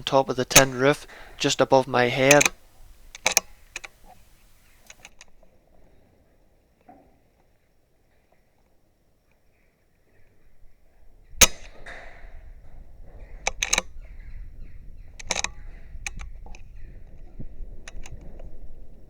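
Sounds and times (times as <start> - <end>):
air rifle firing crack: 0.0 - 5.1, 11.4 - 12.2
quiet clicks and knocks: 0.0 - 5.3.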